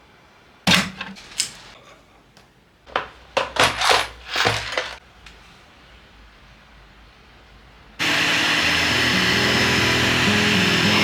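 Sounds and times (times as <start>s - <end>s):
hard plastic parts clacking: 0.7s - 1.8s, 2.9s - 5.0s.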